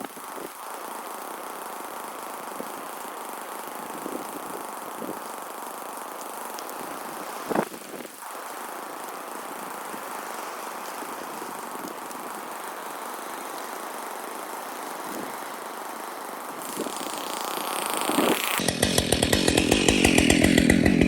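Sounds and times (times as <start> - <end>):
snowmobile running: 15.0 - 21.0.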